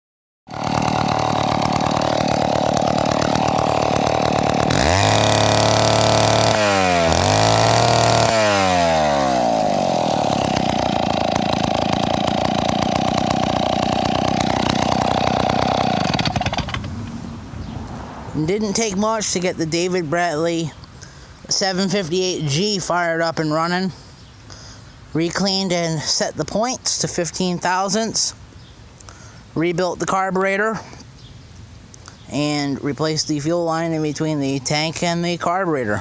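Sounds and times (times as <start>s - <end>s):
chainsaw engine idling and revving: 0.5s - 17.2s, 33.6s - 36.0s.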